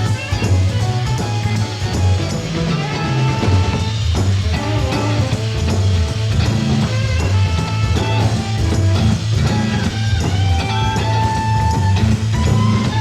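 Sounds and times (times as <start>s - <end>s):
bass and drum groove: 0.0s - 13.0s
electric guitar lines: 0.0s - 13.0s.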